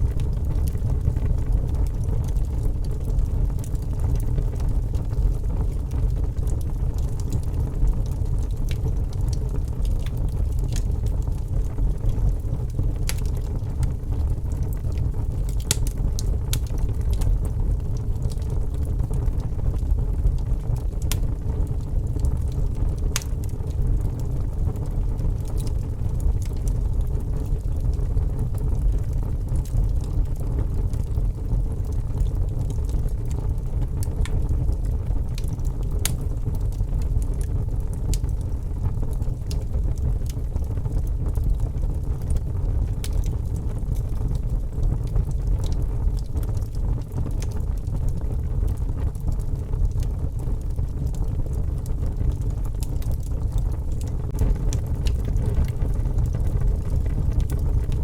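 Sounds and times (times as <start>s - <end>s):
fire popping: 0.0s - 58.0s
wood fire crackling: 0.0s - 58.0s
low rumble: 52.2s - 58.0s.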